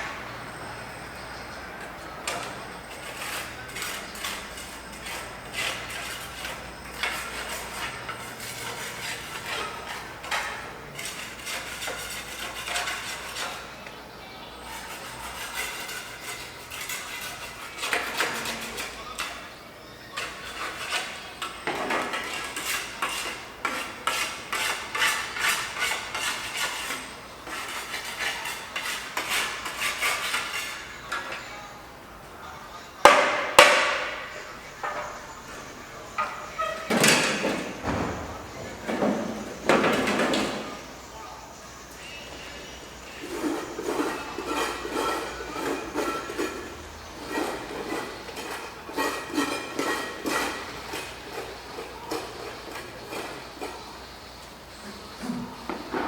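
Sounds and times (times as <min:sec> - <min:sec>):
dishes clinking and knocking: 0:36.1 - 0:40.8.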